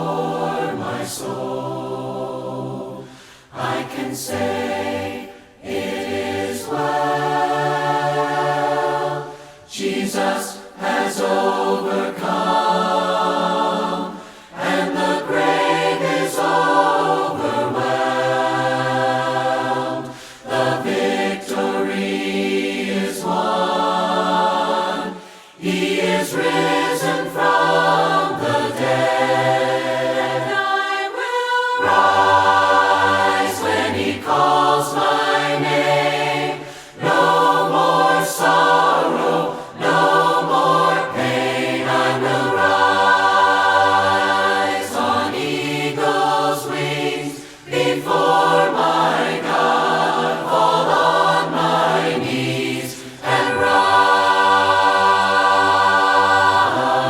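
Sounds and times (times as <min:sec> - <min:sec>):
choir singing in harmony: 0:00.0 - 0:57.0.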